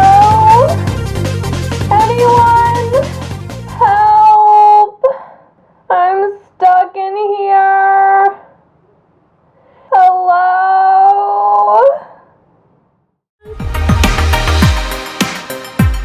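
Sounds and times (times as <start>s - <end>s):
high voice singing held notes: 0.0s - 1.0s.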